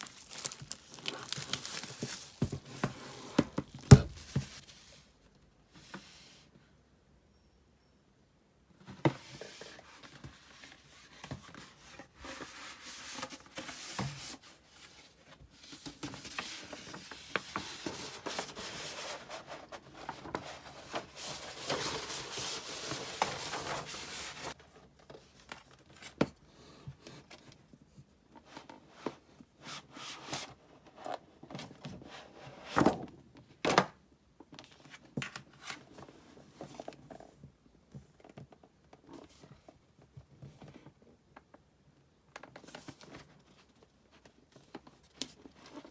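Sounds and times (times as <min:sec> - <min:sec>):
packaging tearing and rustling: 0:00.0 - 0:04.6.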